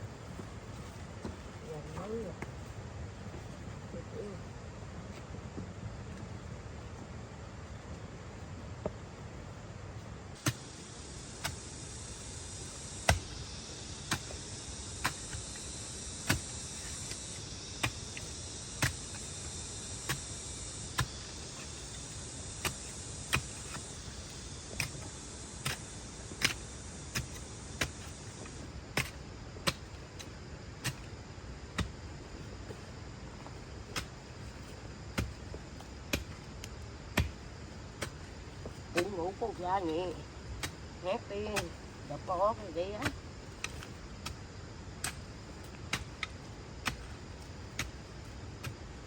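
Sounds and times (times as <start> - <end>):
steady high hiss: 0.0 - 49.0.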